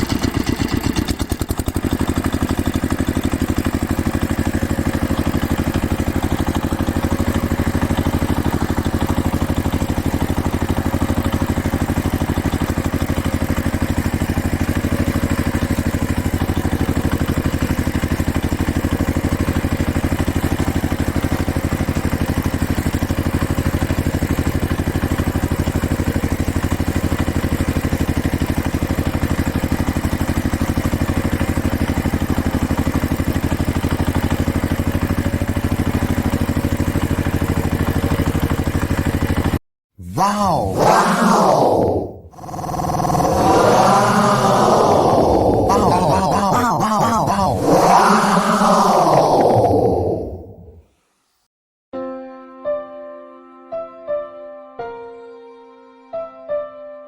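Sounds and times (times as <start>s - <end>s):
small motor running: 3.8s - 50.7s.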